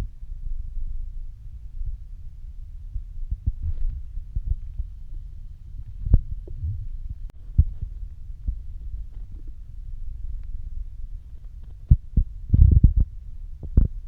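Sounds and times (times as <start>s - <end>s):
stomach growling: 3.3s - 14.0s
stomach pops: 5.8s - 9.6s, 11.3s - 14.0s.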